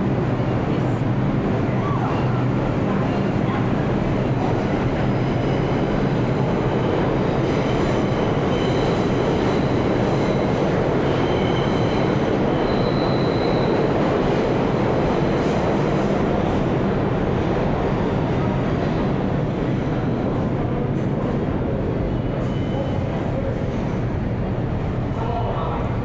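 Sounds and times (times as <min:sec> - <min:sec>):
subway train rumble and clatter: 0:00.0 - 0:26.0
steel wheels squealing: 0:07.0 - 0:13.8, 0:22.1 - 0:23.2.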